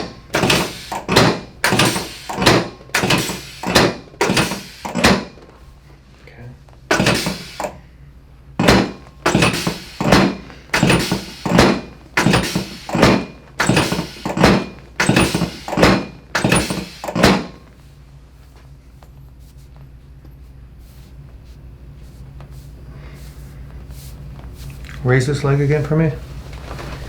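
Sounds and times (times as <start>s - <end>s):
drop table sharp thunks: 8.6s - 17.6s.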